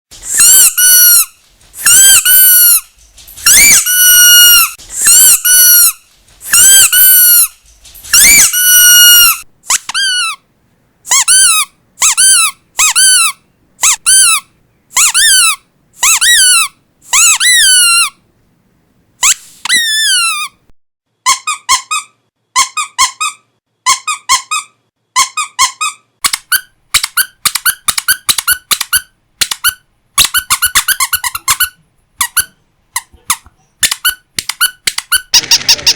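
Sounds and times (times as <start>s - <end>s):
rubber dog toys squeaking: 0.2s - 10.4s, 11.1s - 18.2s, 19.2s - 20.6s, 21.2s - 35.9s.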